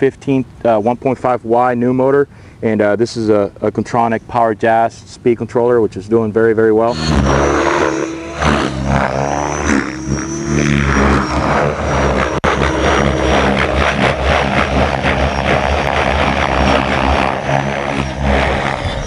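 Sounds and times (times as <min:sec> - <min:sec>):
helicopter rotor chopping: 0:06.7 - 0:19.0
electric motor whine: 0:06.9 - 0:19.0.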